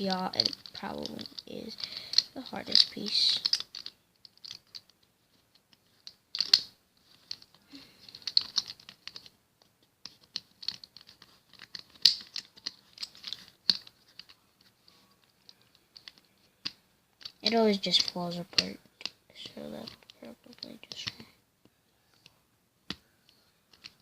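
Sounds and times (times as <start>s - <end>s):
plastic puzzle cube pieces clicking: 0.0s - 21.3s, 22.9s - 24.0s.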